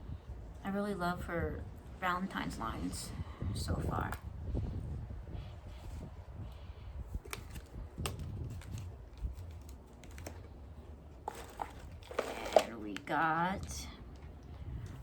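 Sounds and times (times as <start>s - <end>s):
packaging being handled: 7.2s - 13.1s.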